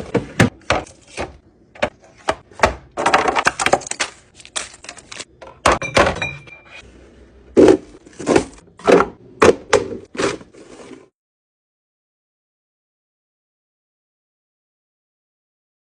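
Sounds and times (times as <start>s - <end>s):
plastic bins knocking: 0.0s - 4.0s, 7.6s - 10.4s
plastic bins clunking: 0.0s - 6.5s, 7.6s - 11.1s.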